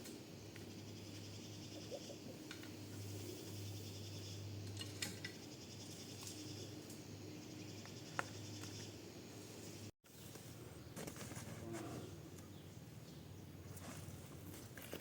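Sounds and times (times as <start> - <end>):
insects chirring: 0.0 - 9.9.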